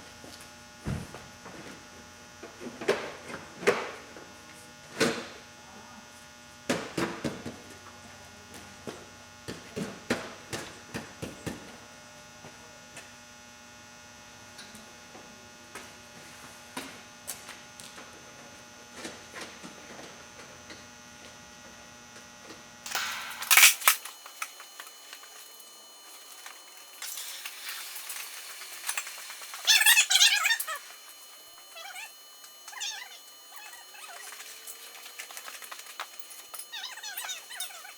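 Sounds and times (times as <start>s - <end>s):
steady electrical hum: 13.2s - 37.9s.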